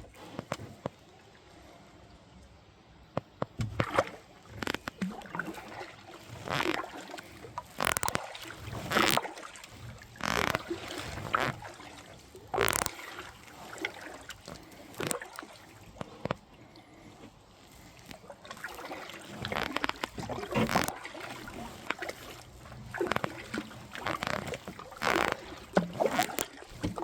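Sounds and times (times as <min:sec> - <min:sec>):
paddle strokes in water: 0:00.0 - 0:27.0
paddle knocks: 0:03.1 - 0:05.4.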